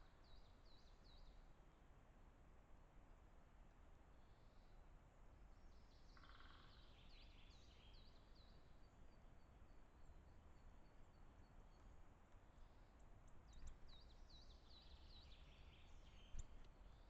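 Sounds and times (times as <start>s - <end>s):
low background hiss: 0.0s - 17.0s
songbird calls: 6.1s - 8.6s.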